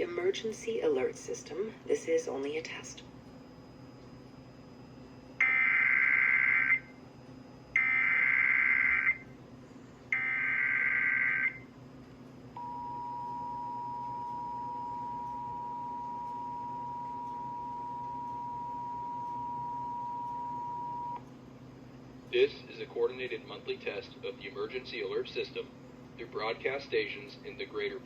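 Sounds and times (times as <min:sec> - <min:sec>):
two-tone attention signal: 0:12.6 - 0:21.2.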